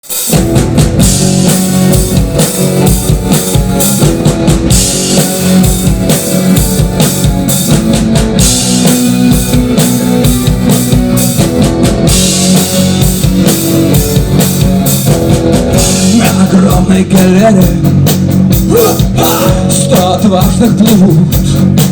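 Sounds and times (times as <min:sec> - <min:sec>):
rock band playing live: 0:00.0 - 0:21.9.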